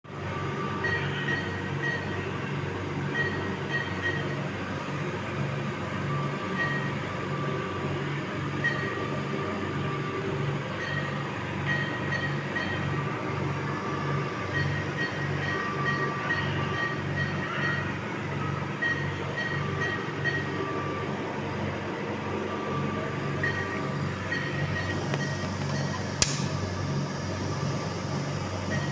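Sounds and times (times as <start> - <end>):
ventilator low pulsing: 22.8 - 28.9.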